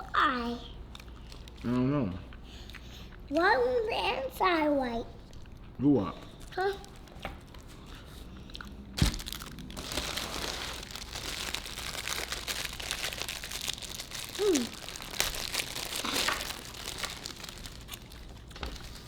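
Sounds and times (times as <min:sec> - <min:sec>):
paper wrapper crinkling: 0:06.3 - 0:08.2, 0:09.0 - 0:19.0.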